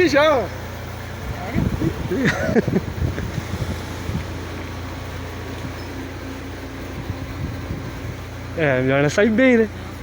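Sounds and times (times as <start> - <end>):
boat engine humming: 0.0 - 10.0
wind on microphone: 1.3 - 4.4, 6.9 - 8.2.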